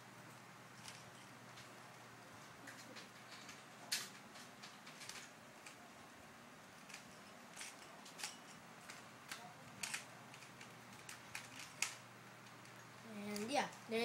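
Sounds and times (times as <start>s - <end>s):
puzzle cube plastic clicks: 6.8s - 13.6s.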